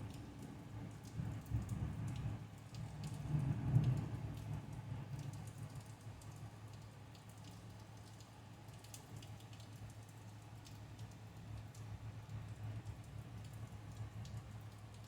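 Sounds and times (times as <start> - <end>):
raindrops ticking: 0.1 - 15.0.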